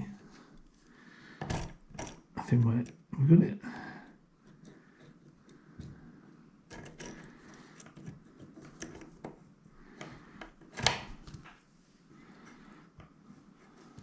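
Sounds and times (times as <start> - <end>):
lock pick clicking and scraping: 6.7 - 11.4.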